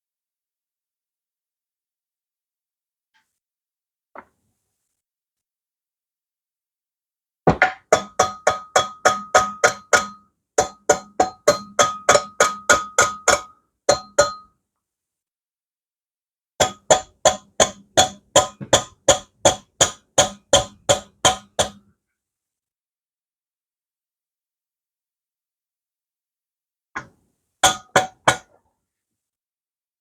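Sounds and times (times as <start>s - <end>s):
hammer striking metal: 16.6s - 21.8s.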